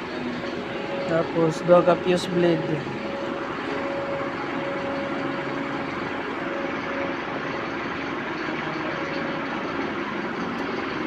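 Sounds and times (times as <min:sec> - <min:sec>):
engine idling: 0:00.0 - 0:11.0.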